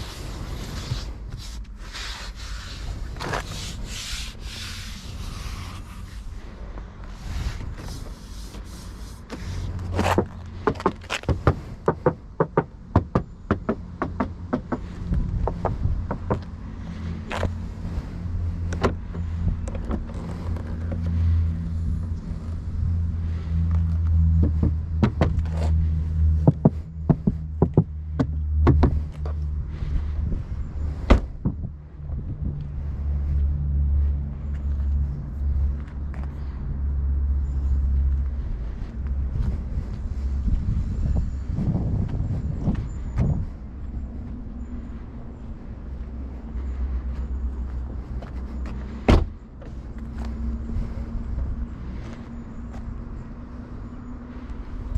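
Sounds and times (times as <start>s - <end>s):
engine and road drone: 0.0s - 54.9s
sharp knocks: 10.7s - 16.5s, 24.4s - 25.5s.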